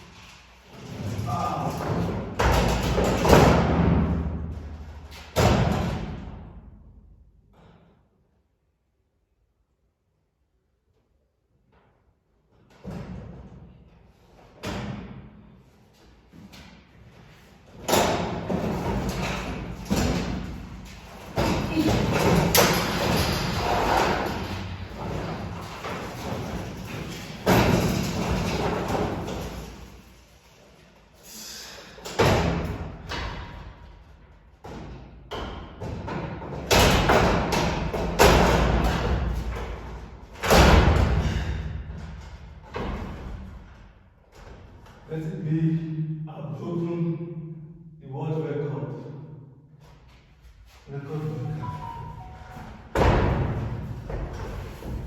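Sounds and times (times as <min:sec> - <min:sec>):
heavy thumps and bangs: 0:52.9 - 0:55.0.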